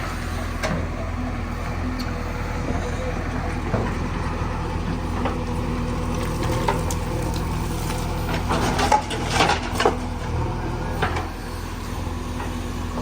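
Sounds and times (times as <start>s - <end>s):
diesel engine running: 0.0s - 13.0s
knocks and crunching: 3.5s - 10.2s.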